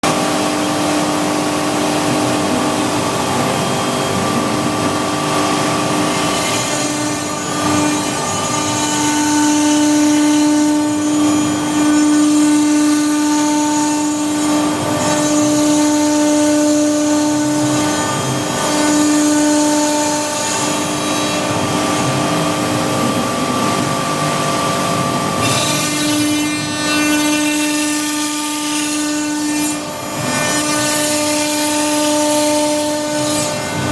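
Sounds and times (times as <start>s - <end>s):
cutter cutting panel: 0.0s - 33.9s
router spindle whine: 0.0s - 33.9s.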